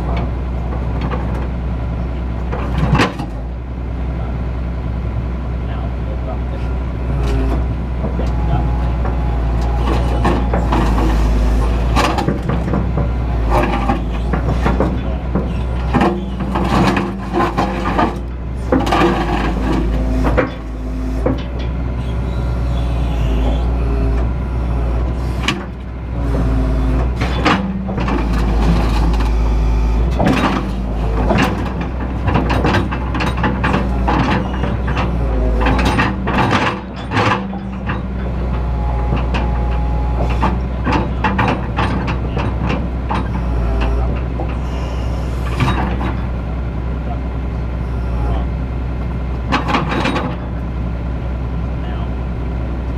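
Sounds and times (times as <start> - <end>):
excavator diesel engine: 0.0 - 52.9
metallic clanks and knocks: 7.2 - 21.9, 25.3 - 44.6, 45.4 - 46.3, 49.5 - 50.6.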